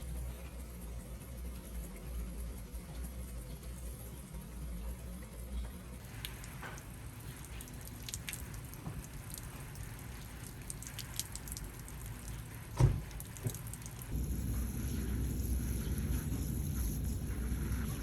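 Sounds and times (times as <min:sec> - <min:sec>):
water dripping and pattering: 0:06.0 - 0:14.5
dull thump: 0:12.8 - 0:13.6.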